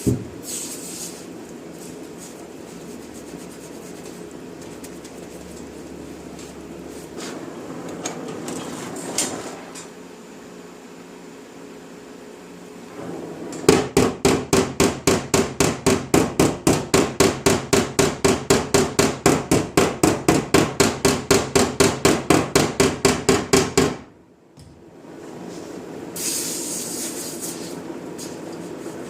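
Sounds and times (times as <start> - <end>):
hammer tapping on metal panel: 13.7 - 24.1.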